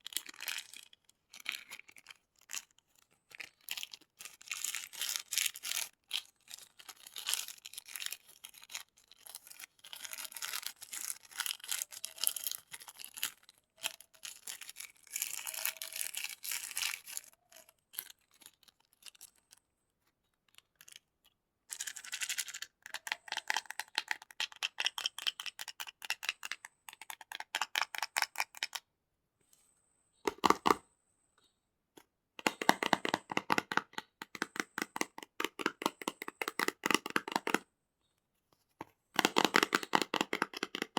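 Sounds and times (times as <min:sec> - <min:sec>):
plastic wrappers crinkling: 0:00.0 - 0:19.6.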